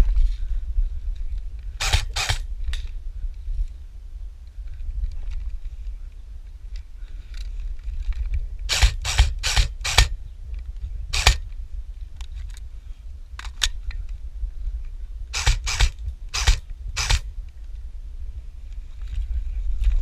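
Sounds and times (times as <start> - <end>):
low microphone rumble: 0.0 - 20.0
airsoft gun shots: 1.8 - 2.5, 8.7 - 10.2, 11.2 - 11.4, 15.4 - 17.3.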